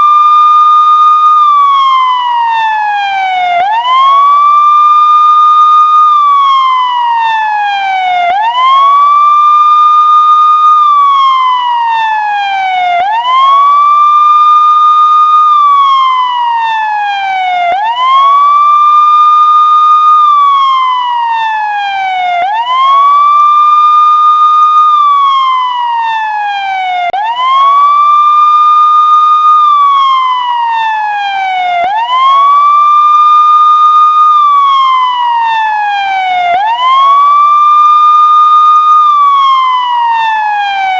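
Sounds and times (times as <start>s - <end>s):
emergency vehicle siren wailing: 0.0s - 40.9s.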